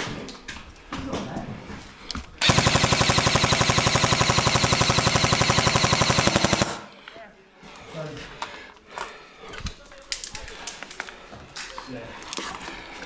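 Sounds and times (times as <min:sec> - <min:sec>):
airsoft rifle full-auto burst: 0:02.4 - 0:07.0.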